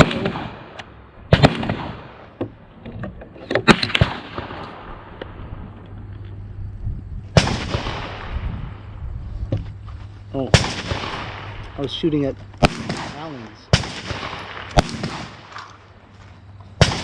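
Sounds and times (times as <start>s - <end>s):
gunshots with echo: 0.0s - 2.3s, 7.4s - 8.6s, 10.5s - 15.7s, 16.8s - 17.0s.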